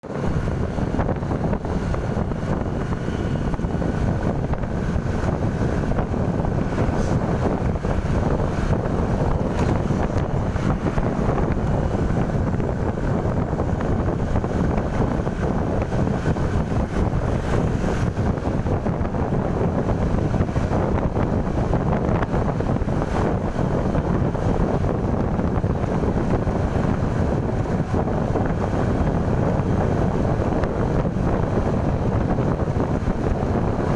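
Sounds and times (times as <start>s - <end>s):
low vehicle rumble: 0.0s - 33.9s
wind buffeting microphone: 0.0s - 33.9s.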